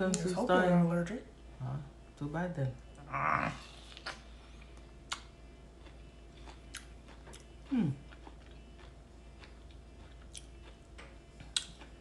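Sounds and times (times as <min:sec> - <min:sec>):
person chewing crisp fruit: 0:03.5 - 0:12.0
woman humming: 0:07.7 - 0:08.0.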